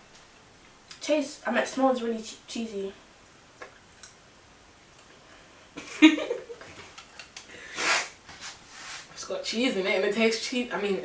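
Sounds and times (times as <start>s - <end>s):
person sniffing: 7.5s - 9.1s.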